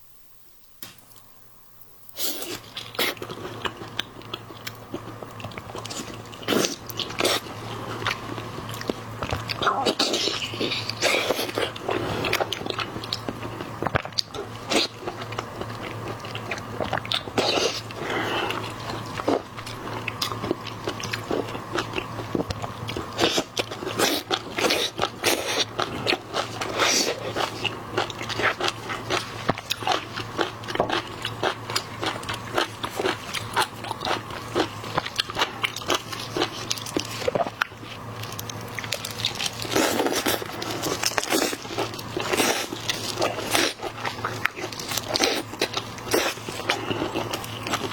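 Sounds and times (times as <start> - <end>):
crunchy biting and chewing: 2.2 - 47.9.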